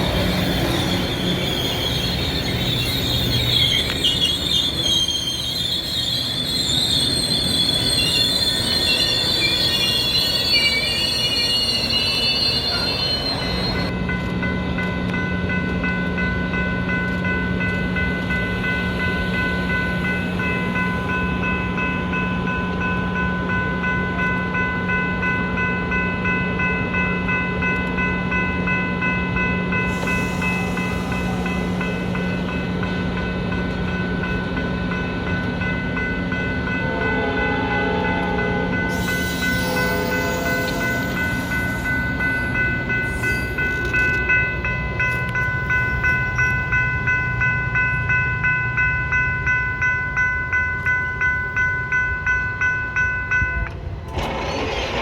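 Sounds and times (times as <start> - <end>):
train wheels squealing on rails: 0.0 - 14.0, 16.9 - 22.8, 28.6 - 48.9, 53.2 - 55.0.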